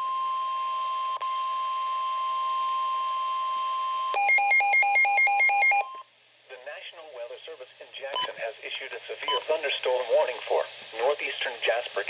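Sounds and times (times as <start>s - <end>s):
steady alarm tone: 4.1s - 5.9s
two-pitch electronic alarm: 4.1s - 5.9s.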